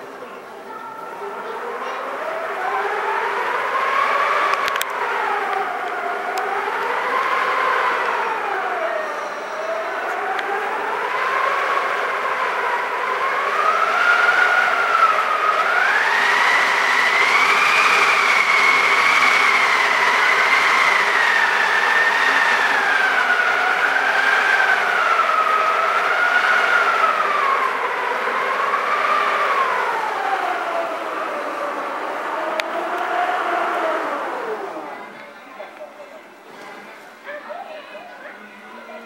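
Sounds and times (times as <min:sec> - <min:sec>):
howling whistling wind: 0:00.0 - 0:35.3.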